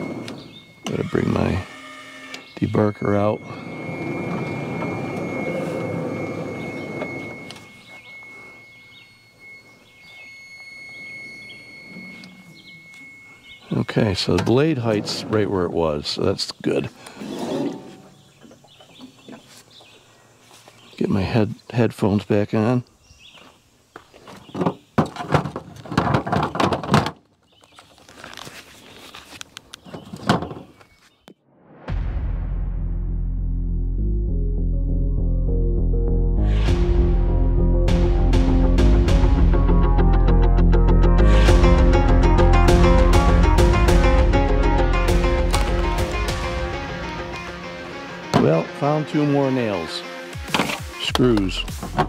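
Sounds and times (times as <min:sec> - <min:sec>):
thin high whine: 0:00.0 - 0:15.6
birds chirping faintly: 0:02.2 - 0:25.1, 0:27.4 - 0:31.4
objects knocking and clattering: 0:24.5 - 0:27.2.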